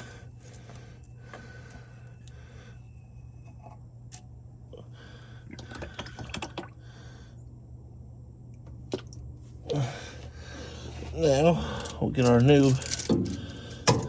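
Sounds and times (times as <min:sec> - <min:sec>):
metal tools clicking and scraping: 0:00.0 - 0:04.3, 0:11.4 - 0:14.0.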